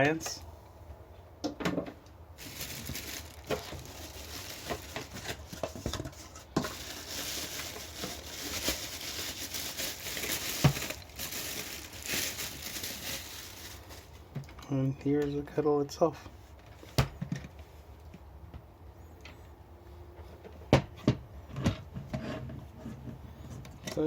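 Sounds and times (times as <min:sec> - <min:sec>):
packaging crinkling: 0:02.4 - 0:14.4.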